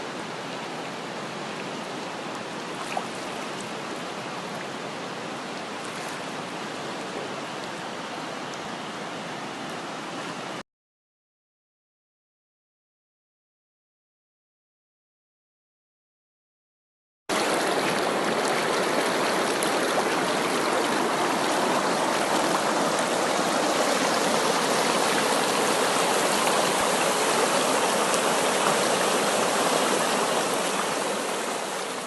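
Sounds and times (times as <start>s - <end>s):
flowing water rushing: 0.0s - 10.6s, 17.3s - 32.0s.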